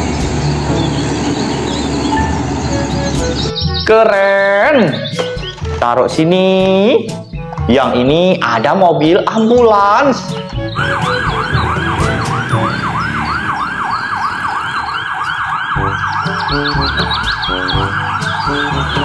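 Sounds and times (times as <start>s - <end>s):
ambulance siren yelping: 0.7s - 3.9s, 10.0s - 19.0s.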